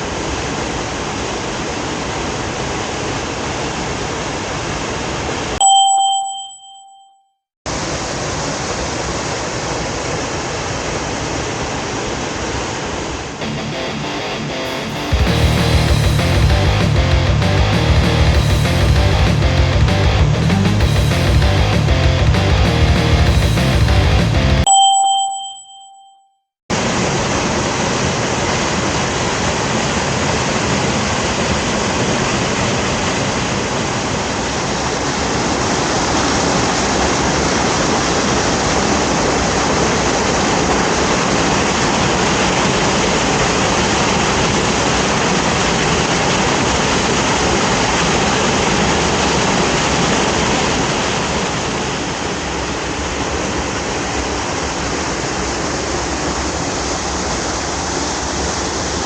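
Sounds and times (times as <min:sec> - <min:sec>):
waterfall roaring: 0:26.7 - 0:59.0.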